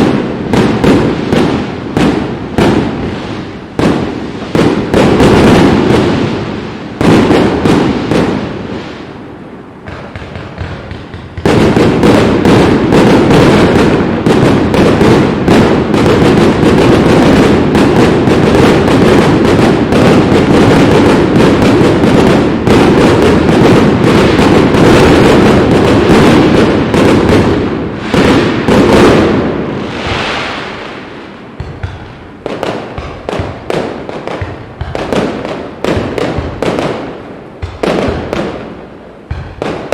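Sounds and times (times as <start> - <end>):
firework shell bursts: 29.9 - 36.8.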